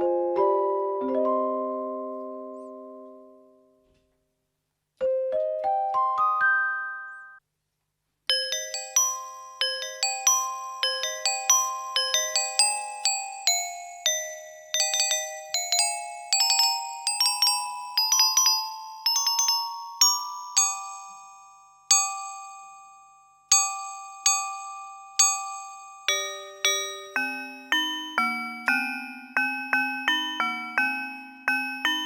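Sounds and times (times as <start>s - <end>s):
bell-like keyboard mallet notes: 5.0s - 7.4s, 8.3s - 32.0s.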